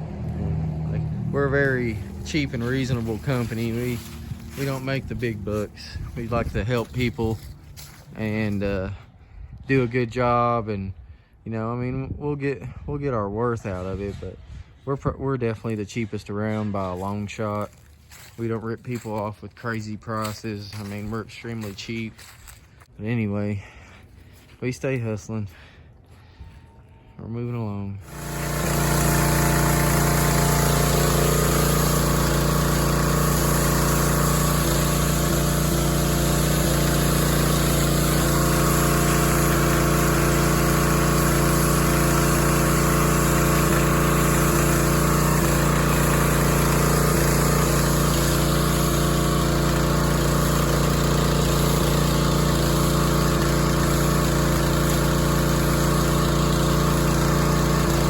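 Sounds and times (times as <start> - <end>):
pressure washer engine running: 0.0 - 8.9, 17.2 - 22.6, 28.0 - 58.0.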